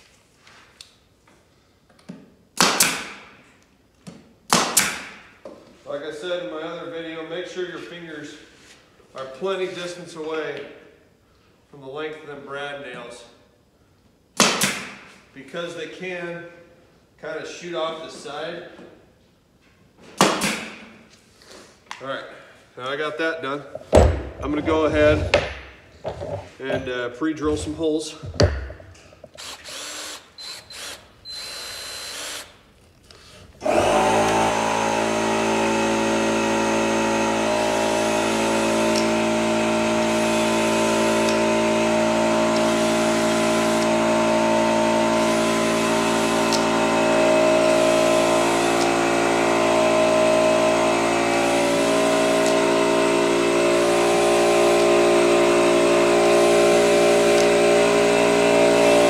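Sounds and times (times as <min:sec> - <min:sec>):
knocks and handling: 0:23.7 - 0:29.4
power drill drilling wood: 0:29.4 - 0:32.6, 0:33.6 - 0:59.0.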